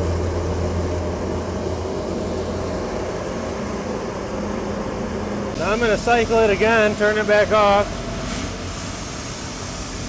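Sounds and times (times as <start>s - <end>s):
low hum: 0.0s - 7.2s
burners and blower roaring: 0.0s - 10.0s.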